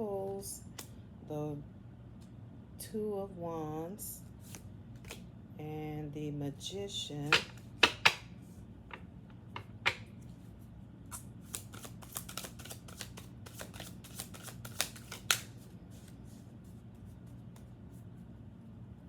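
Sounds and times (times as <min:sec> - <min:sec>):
faint steady hum: 0:00.0 - 0:19.0
cardboard cards clicking and rustling: 0:11.4 - 0:15.6.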